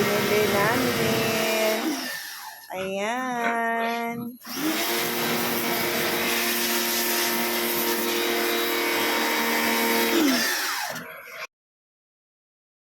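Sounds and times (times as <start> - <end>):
pressure washer motor hum: 0.0 - 2.7, 4.4 - 11.4.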